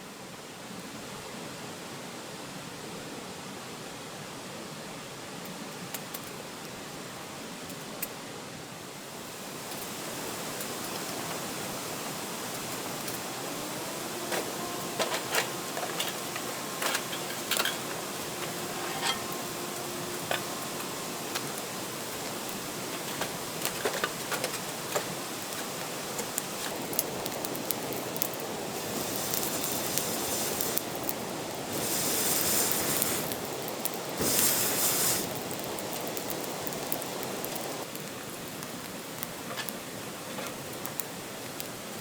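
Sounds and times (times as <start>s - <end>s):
steady hiss: 0.0s - 42.0s
campfire crackling and popping: 9.1s - 42.0s.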